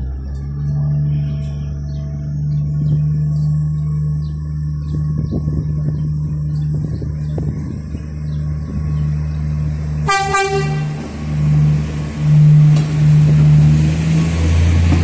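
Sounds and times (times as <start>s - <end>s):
train engine running: 0.0s - 15.0s
train horn blast: 10.0s - 12.6s.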